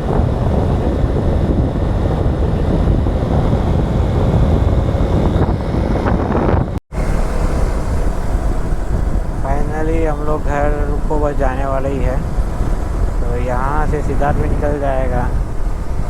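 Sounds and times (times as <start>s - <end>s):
strong wind buffeting microphone: 0.0s - 16.0s.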